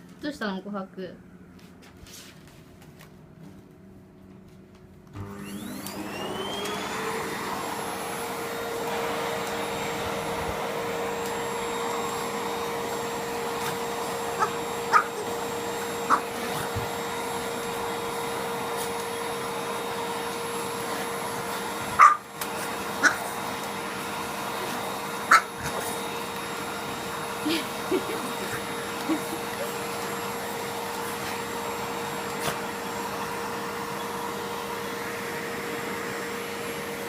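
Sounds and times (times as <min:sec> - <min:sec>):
vacuum cleaner motor whine: 0:04.7 - 0:37.0.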